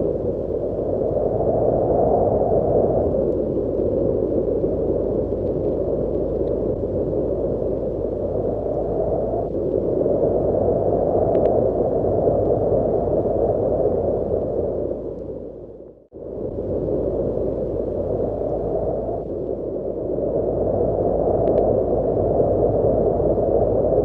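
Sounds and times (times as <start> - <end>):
wind breeze rushing: 0.0 - 24.0.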